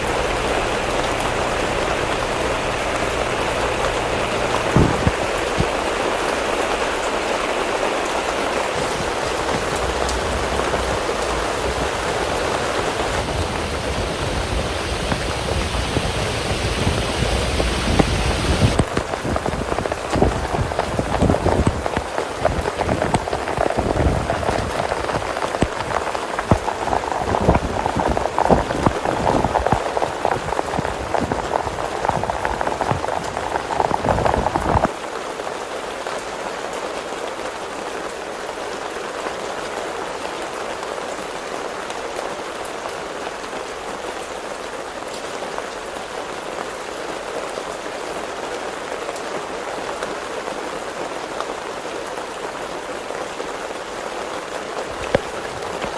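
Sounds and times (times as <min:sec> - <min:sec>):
low thuds: 0:00.0 - 0:06.1
heavy rain falling: 0:00.0 - 0:55.9.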